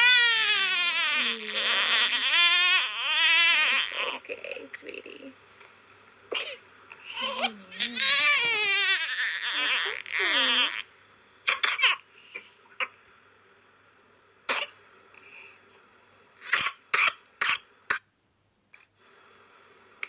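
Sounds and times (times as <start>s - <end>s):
child crying: 0.0s - 3.9s
child coughing: 6.3s - 6.6s, 11.5s - 12.0s.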